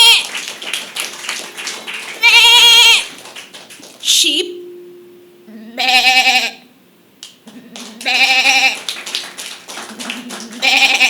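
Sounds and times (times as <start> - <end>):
person imitating sheep bleats: 2.2 - 3.0, 5.5 - 6.7, 7.5 - 8.8, 10.2 - 11.0.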